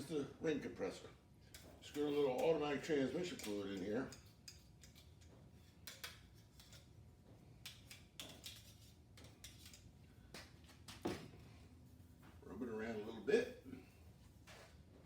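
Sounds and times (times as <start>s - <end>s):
faint metal clicks and taps: 1.4s - 11.1s.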